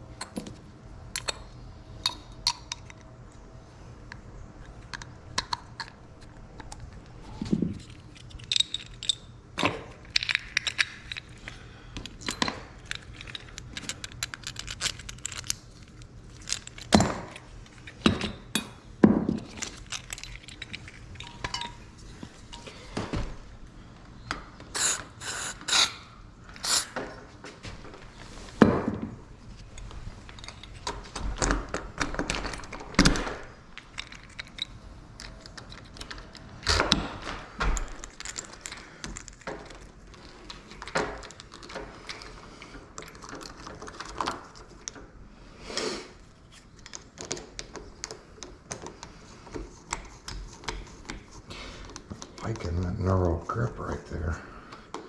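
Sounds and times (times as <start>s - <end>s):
metal lock parts clicking: 1.1s - 1.4s, 7.8s - 11.4s, 12.0s - 18.7s, 33.8s - 36.9s.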